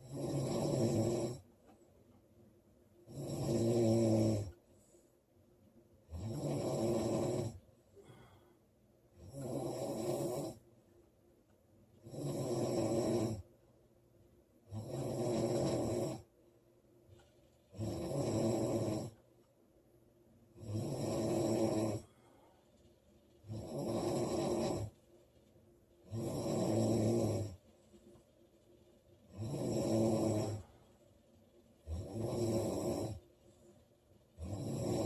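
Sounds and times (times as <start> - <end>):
woman snoring loudly: 0.0 - 1.4, 3.1 - 4.6, 6.1 - 7.6, 9.2 - 10.6, 12.0 - 13.4, 14.7 - 16.3, 17.7 - 19.2, 20.6 - 22.1, 23.5 - 25.0, 26.1 - 27.6, 29.3 - 30.8, 31.8 - 33.2, 34.4 - 35.0
quiet breathing: 0.0 - 13.8, 14.5 - 19.6, 20.4 - 35.0.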